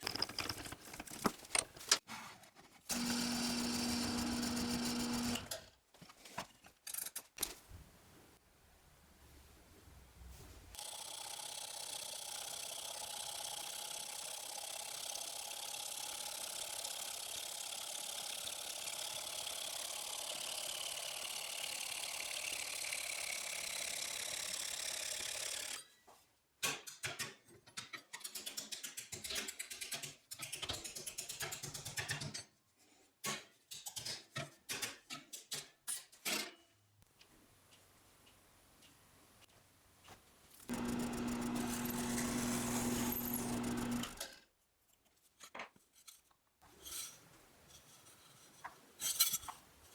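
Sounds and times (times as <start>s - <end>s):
small motor tool whining: 2.9s - 5.5s, 10.8s - 25.8s, 40.7s - 44.3s
short irregular bursts and clicks: 40.7s - 44.3s.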